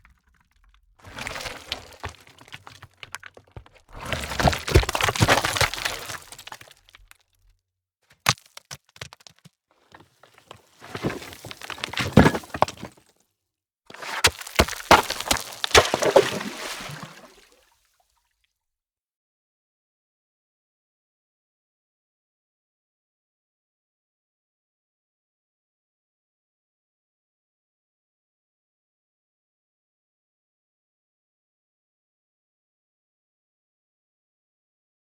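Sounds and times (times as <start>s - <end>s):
stones crashing and tumbling: 0.0s - 7.2s, 8.2s - 13.1s, 13.9s - 17.5s
sharp stone knocks: 14.1s - 16.4s.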